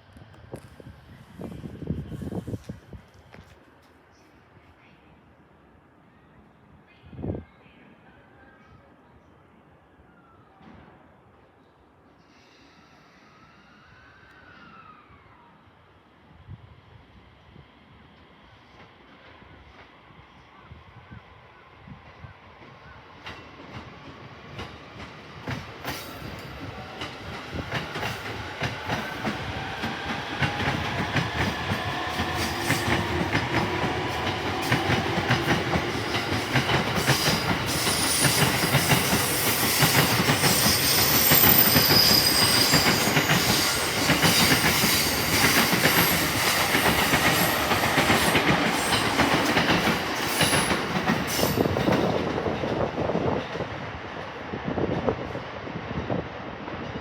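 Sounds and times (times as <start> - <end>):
high-pitched wheel squeal: 40.4 - 43.8.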